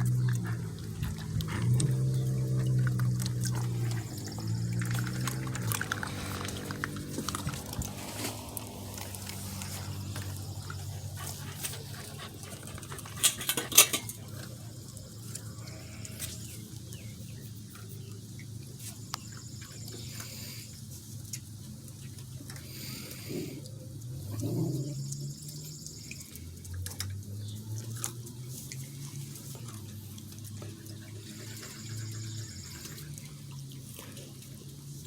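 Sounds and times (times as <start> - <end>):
shuffling and scratching: 0.0 - 14.3
puppies low drawn-out sound: 0.0 - 21.2, 22.4 - 35.0.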